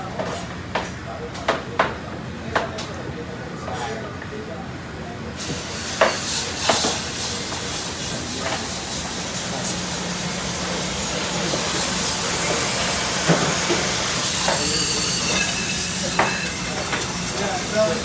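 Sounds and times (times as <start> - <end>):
water spraying: 5.5 - 18.0
low machine hum: 8.1 - 18.0
dishes clinking: 12.4 - 17.9.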